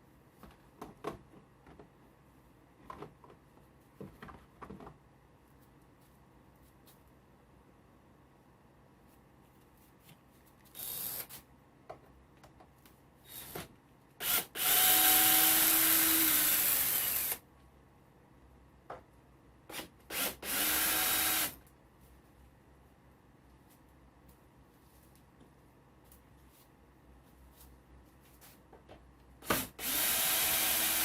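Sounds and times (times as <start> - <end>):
power drill running: 14.2 - 17.4, 20.1 - 21.6, 29.5 - 31.0.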